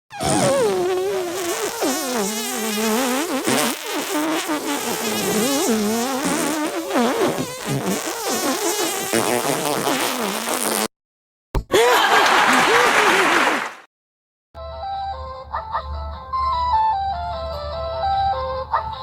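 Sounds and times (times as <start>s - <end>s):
music with sliding lead melody: 14.6s - 19.0s.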